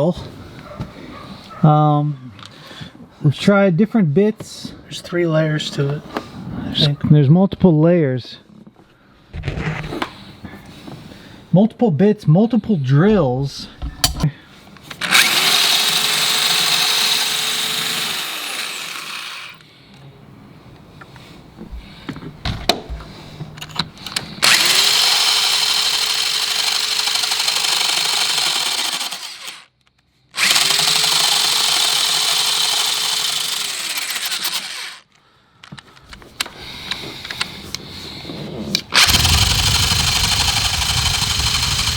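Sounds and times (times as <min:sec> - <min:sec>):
electric drill grinding into steel: 0:14.9 - 0:19.6, 0:24.4 - 0:29.7, 0:30.4 - 0:35.1, 0:38.9 - 0:41.9.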